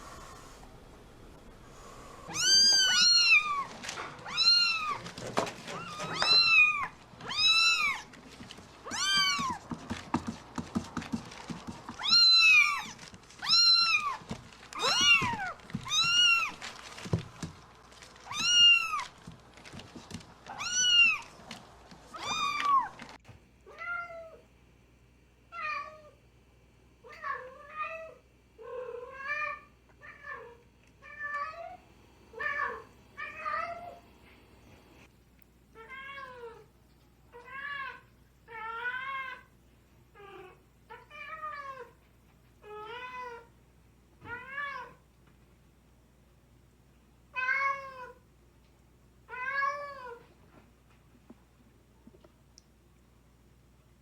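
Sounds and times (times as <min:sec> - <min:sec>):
kitten meowing: 0:02.3 - 0:05.0, 0:05.8 - 0:08.1, 0:08.9 - 0:09.6, 0:12.0 - 0:14.2, 0:14.8 - 0:16.6, 0:18.3 - 0:19.1, 0:20.5 - 0:21.3, 0:22.2 - 0:22.9.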